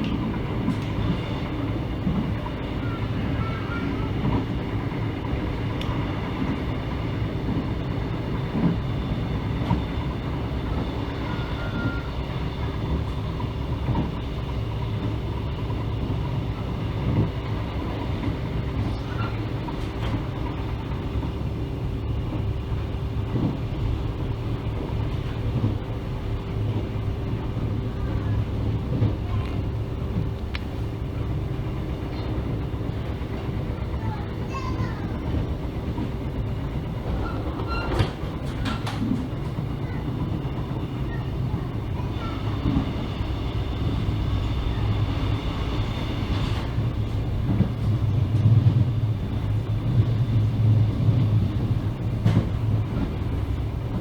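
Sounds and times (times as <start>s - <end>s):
passenger train rumbling: 0.0s - 54.0s
wheels knocking on rails: 17.0s - 54.0s.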